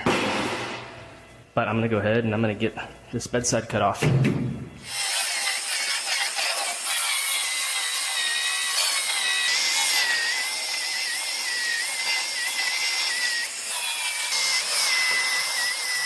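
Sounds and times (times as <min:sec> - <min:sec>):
power tool cutting aluminum: 0:04.8 - 0:16.0.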